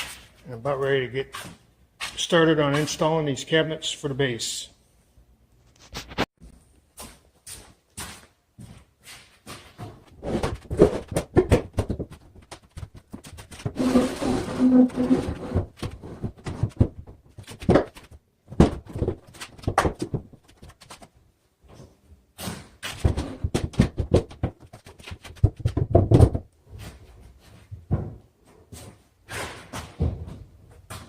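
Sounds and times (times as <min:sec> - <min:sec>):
wooden cabinets knocking: 0:23.0 - 0:26.5.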